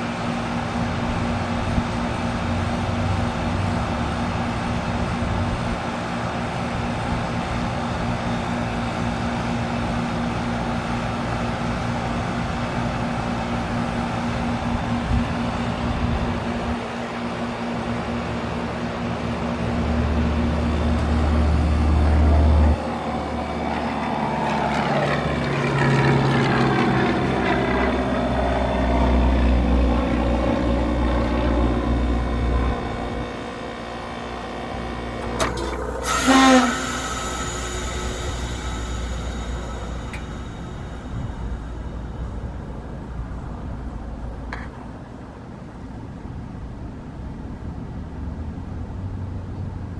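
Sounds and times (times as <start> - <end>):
even rushing noise: 27.3 - 44.0
heat pump hum: 27.6 - 44.6.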